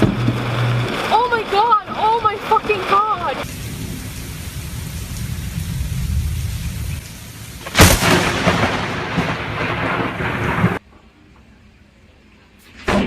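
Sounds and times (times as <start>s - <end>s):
lightning strike crack: 0.0s - 10.8s, 12.7s - 13.0s
steady rain: 0.0s - 13.0s
rolling thunder: 3.3s - 11.1s.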